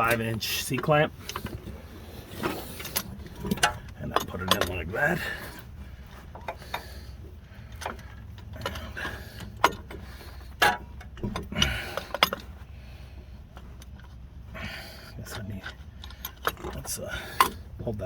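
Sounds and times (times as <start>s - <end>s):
steady low hum: 0.0s - 18.0s
metal clicks and clinks: 2.8s - 5.4s.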